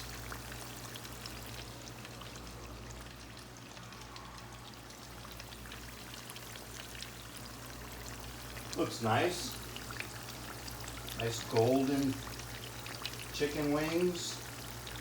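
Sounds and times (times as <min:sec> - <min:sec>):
oil sizzling and crackling: 0:00.0 - 0:15.0.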